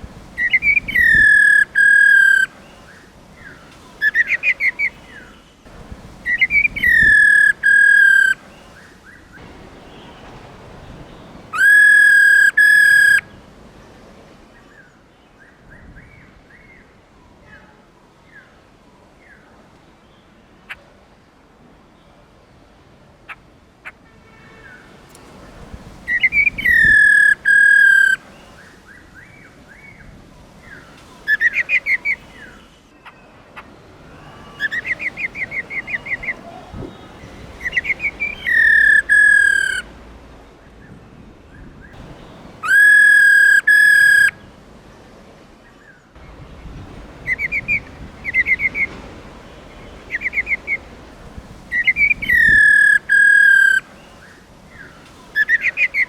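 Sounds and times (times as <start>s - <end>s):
bird whistled calls: 0.4s - 2.5s, 3.5s - 5.3s, 6.3s - 8.4s, 11.5s - 13.2s, 26.1s - 29.0s, 34.2s - 39.8s, 42.6s - 44.4s, 47.2s - 49.0s, 50.1s - 50.9s, 51.7s - 56.0s.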